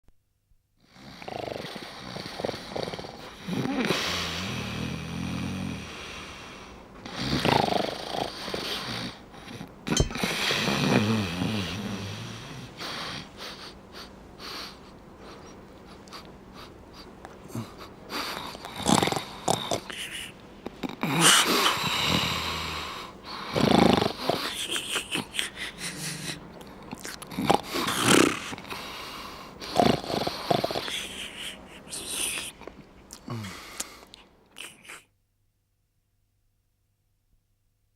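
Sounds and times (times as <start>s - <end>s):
loud wheezy snoring: 0.8s - 15.5s, 17.5s - 32.6s.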